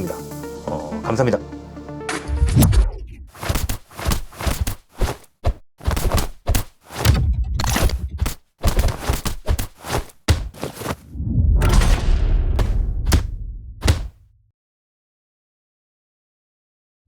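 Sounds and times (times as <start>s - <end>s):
fight hits and thuds: 3.3s - 14.2s.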